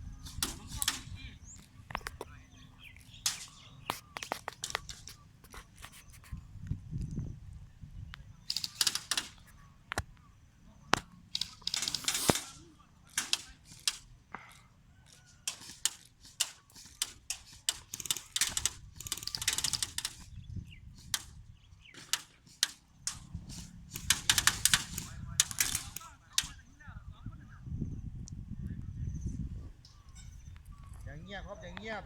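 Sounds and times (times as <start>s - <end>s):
airsoft guns firing: 8.5s - 9.4s, 11.3s - 14.1s, 15.5s - 20.2s, 21.9s - 26.6s.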